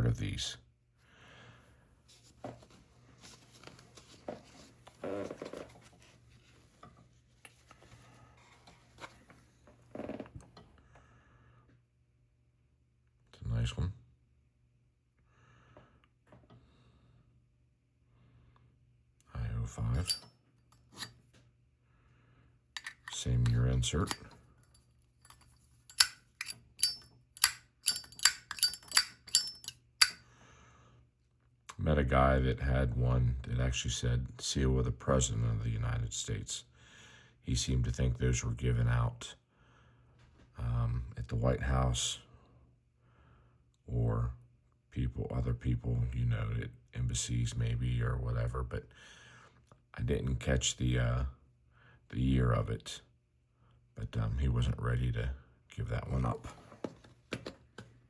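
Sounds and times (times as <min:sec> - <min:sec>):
metal lighter clicks: 0:25.9 - 0:30.2.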